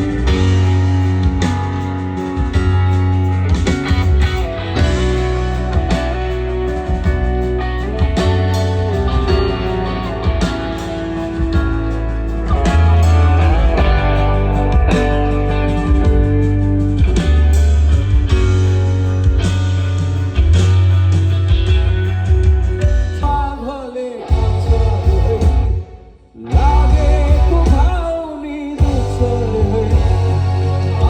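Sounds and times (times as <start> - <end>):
rock band playing: 0.0 - 31.0
person singing: 23.2 - 31.0.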